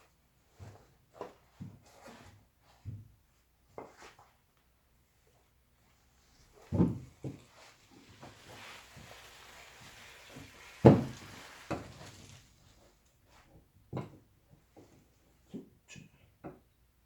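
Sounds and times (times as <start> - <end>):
knife shaving wood: 7.8 - 12.6.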